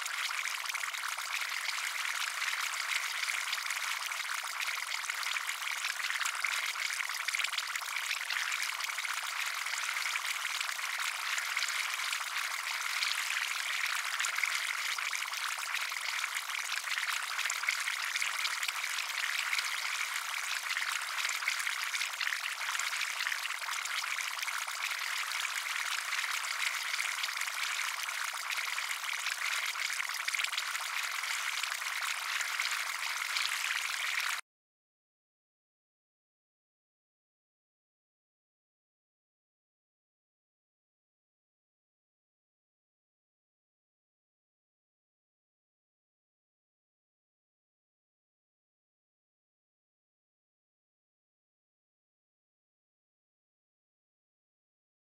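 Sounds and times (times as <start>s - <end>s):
liquid fizzing and bubbling: 0.0s - 34.4s.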